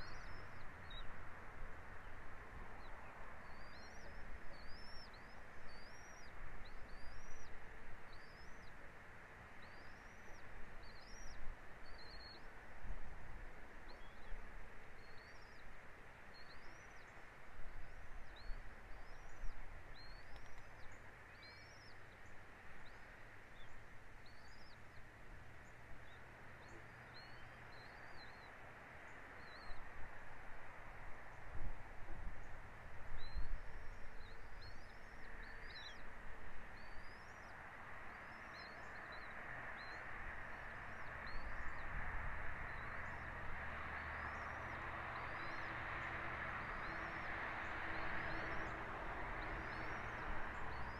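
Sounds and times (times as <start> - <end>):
wind: 0.0 - 50.9
bird chirping: 2.8 - 7.5, 8.1 - 8.8, 9.6 - 12.5, 15.0 - 15.7, 16.3 - 17.2, 17.8 - 29.9, 42.6 - 50.9.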